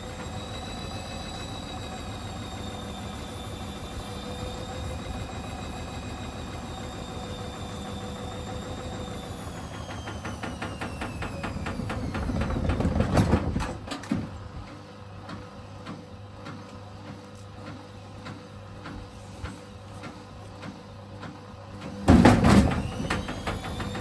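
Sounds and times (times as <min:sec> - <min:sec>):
washing machine drum knocking: 0:22.1 - 0:24.0.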